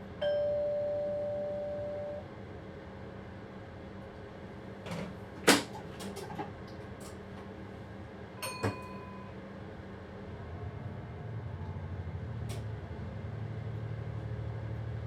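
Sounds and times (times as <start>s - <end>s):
ringing metallic clink: 8.4s - 9.2s.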